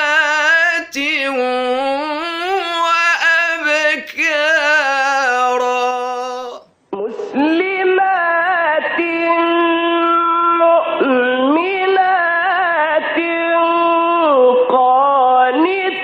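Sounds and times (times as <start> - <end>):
man chanting recitation: 0.0 - 6.7.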